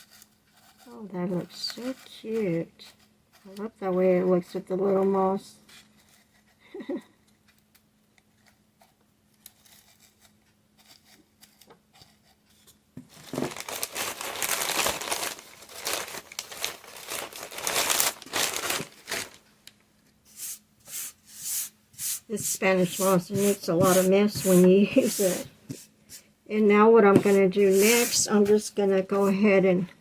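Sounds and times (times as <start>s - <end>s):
dry moss crackling rustle: 13.2s - 19.5s.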